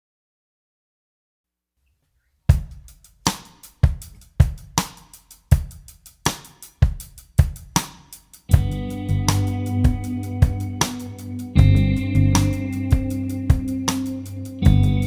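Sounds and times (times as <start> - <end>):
drum kit beat: 2.5 - 15.0.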